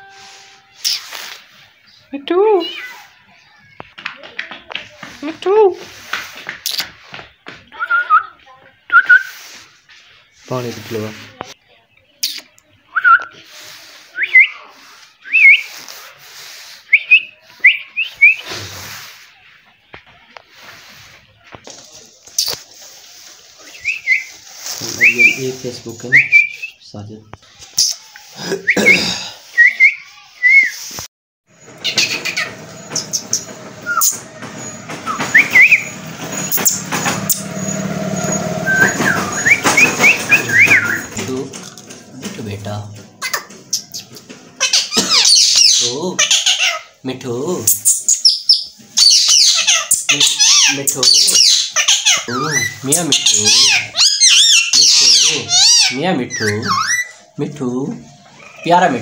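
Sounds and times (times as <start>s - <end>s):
parrot whistled chirps: 29.6s - 30.8s, 35.1s - 35.9s
parrot whistling: 31.8s - 34.3s, 35.1s - 37.5s, 38.6s - 41.2s, 47.8s - 57.2s.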